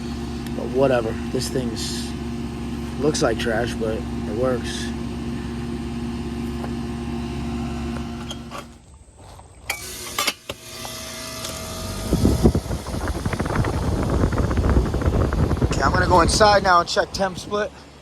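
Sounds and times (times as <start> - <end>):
air conditioner unit humming: 0.0 - 8.8, 9.7 - 18.0
irregular low rumbling: 11.7 - 18.0.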